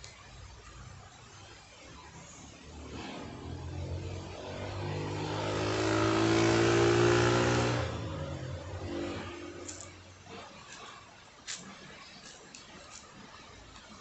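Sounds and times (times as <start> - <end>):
vehicle engine passing by: 2.5 - 9.9.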